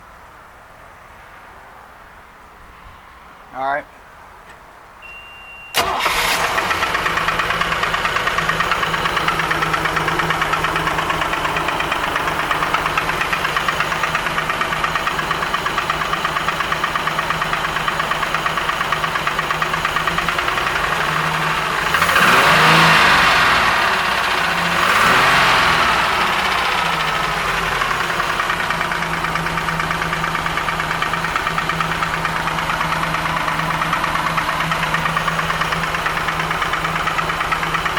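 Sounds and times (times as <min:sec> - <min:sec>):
short beep: 0:05.0 - 0:05.8
boat engine knocking and revving: 0:06.7 - 0:37.9.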